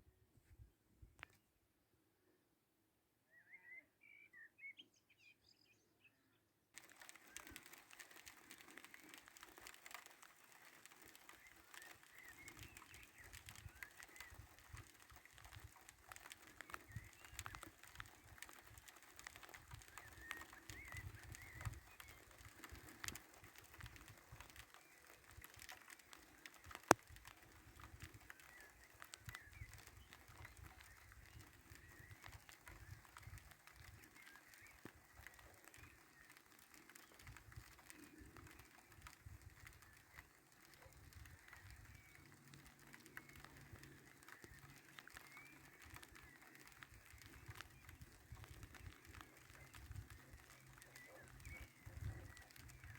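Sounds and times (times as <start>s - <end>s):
small birds chirping: 3.3s - 52.9s
crackly hiss with clicks: 6.8s - 52.9s
wind rumble on microphone: 10.6s - 52.9s.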